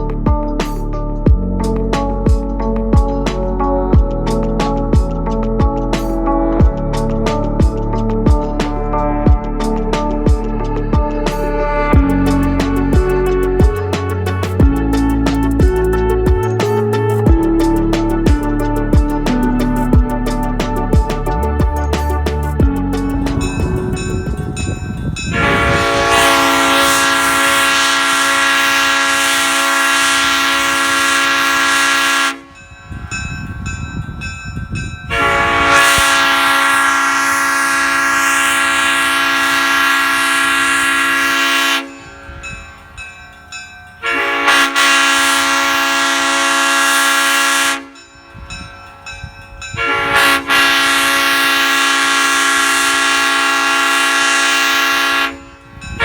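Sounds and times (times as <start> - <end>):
low rumble: 0.0 - 27.3
high-pitched air horn chord: 6.5 - 22.2, 22.8 - 32.9, 35.1 - 56.0.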